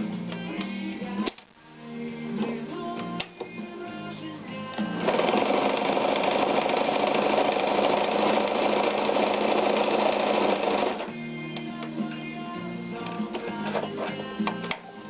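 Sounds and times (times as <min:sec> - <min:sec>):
sewing machine clatter: 0:05.0 - 0:11.0.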